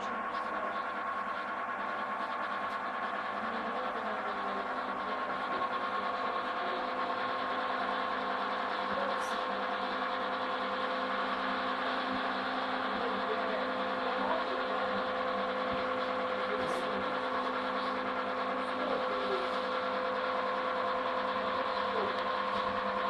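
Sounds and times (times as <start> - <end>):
motor humming steadily: 0.0 - 23.0.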